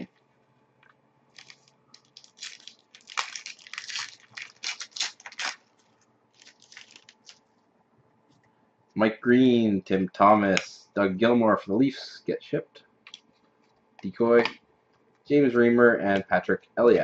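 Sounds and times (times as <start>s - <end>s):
foil wrapper crinkling and tearing: 1.3s - 7.5s.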